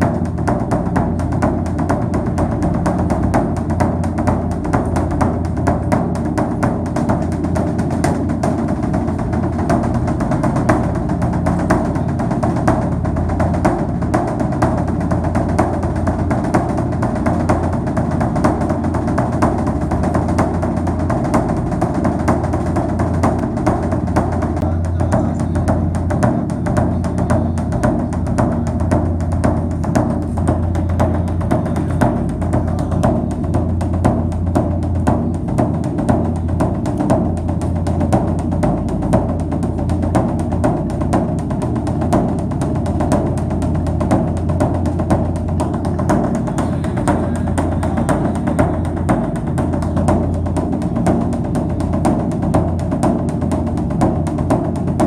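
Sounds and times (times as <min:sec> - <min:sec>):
dense drum beat: 0:00.0 - 0:55.0.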